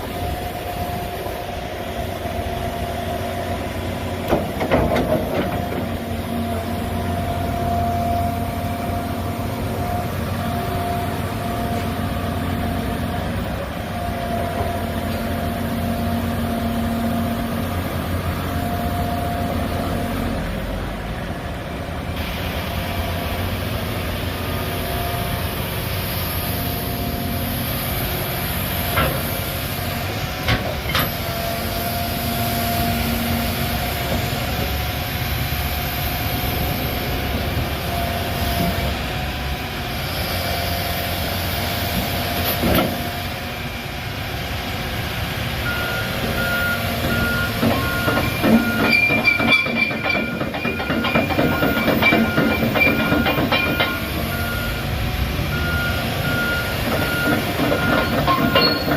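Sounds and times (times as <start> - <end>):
excavator diesel engine running: 0.0 - 58.9
travel alarm beeping: 45.7 - 54.9, 55.6 - 58.9
machine rattling and clanking: 47.6 - 54.2, 56.9 - 58.9.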